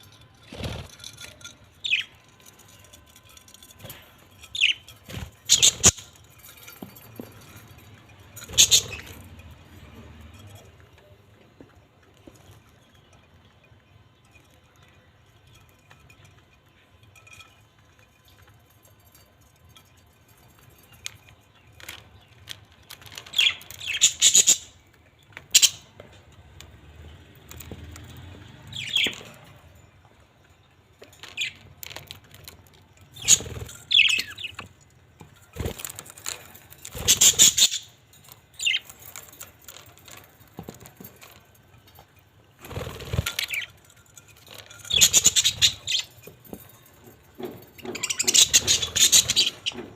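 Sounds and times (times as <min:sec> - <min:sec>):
parrots squawking and chirping: 0:03.9 - 0:10.3, 0:23.1 - 0:24.8, 0:25.5 - 0:25.9, 0:28.7 - 0:29.6, 0:33.1 - 0:34.7, 0:35.5 - 0:40.2, 0:42.6 - 0:46.5, 0:47.4 - 0:49.9.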